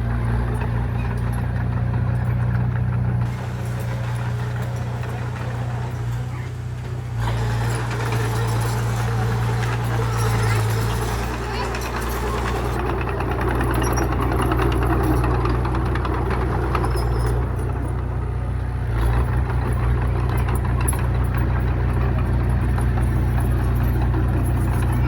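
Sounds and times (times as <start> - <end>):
diesel machine engine running: 0.0 - 25.0.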